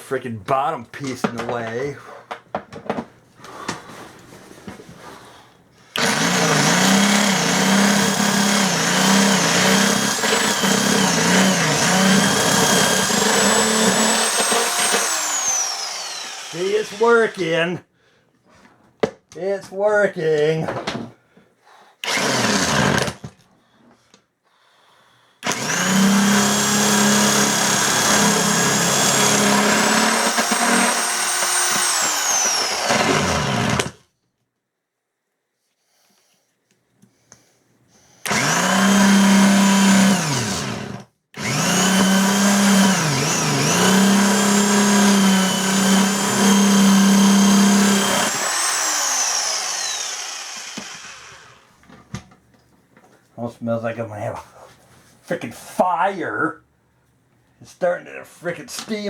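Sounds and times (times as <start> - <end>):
electric impact wrench whine: 6.0 - 17.5, 22.0 - 23.3, 25.4 - 34.0, 38.2 - 51.8.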